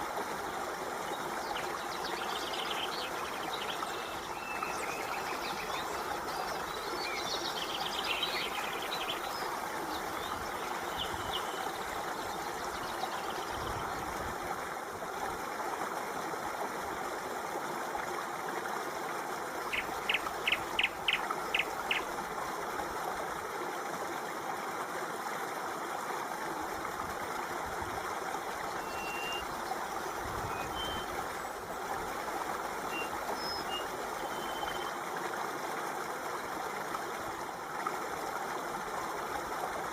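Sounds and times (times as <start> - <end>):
stream water running: 0.0 - 39.9
birds chirping: 1.1 - 13.6, 28.7 - 29.6, 32.9 - 34.9.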